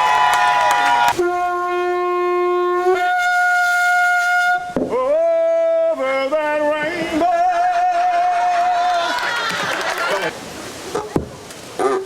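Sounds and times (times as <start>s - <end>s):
conch shell horn blasts: 0.9s - 4.8s.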